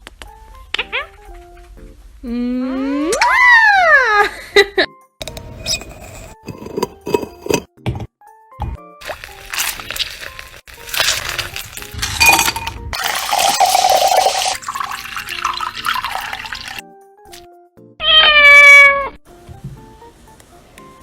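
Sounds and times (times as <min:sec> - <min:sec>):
background music: 0:00.0 - 0:21.0
cat meowing: 0:18.0 - 0:19.2.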